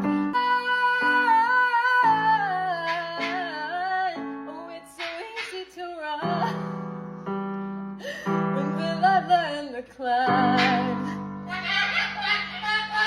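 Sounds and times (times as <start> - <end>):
person singing slow song: 0.0 - 6.9, 8.0 - 13.0
held instrumental chords: 10.3 - 13.0.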